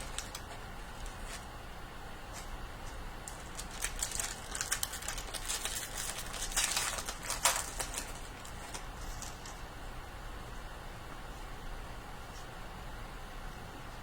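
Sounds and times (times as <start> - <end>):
plastic wrapper crinkling: 0.0 - 1.5, 2.3 - 9.6.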